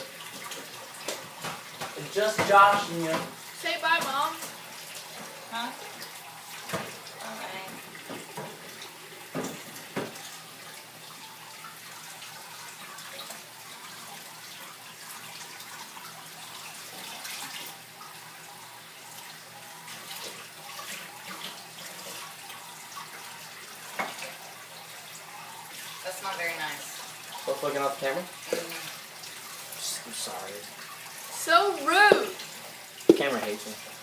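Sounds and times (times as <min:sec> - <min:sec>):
tap running into sink: 0:00.0 - 0:04.6, 0:06.6 - 0:07.1, 0:07.7 - 0:10.4, 0:31.9 - 0:33.7
sharp knocks: 0:33.1 - 0:33.4.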